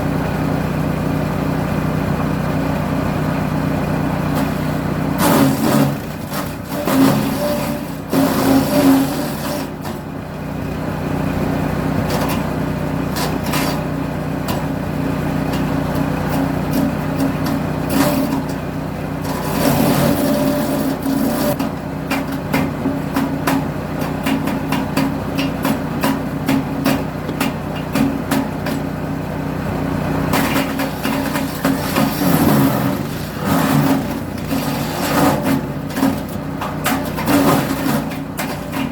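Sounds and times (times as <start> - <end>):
wood chipper engine running: 0.0 - 38.9.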